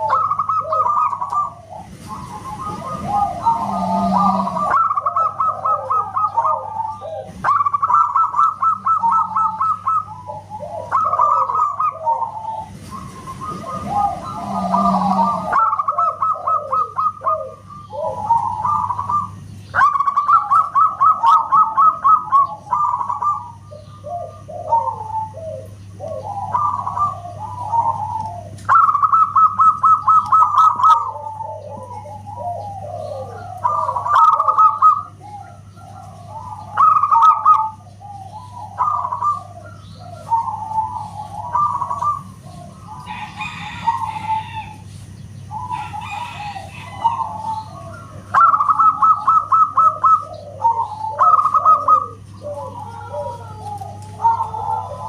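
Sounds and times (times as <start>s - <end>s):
doves cooing: 0.0s - 55.0s
steady low hum: 0.0s - 55.0s.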